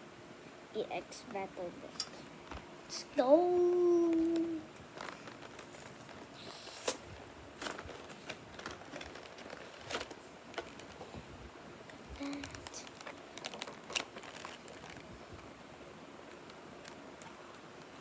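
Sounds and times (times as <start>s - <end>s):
card box and plastic wrap handling: 3.6s - 11.1s, 11.9s - 15.2s.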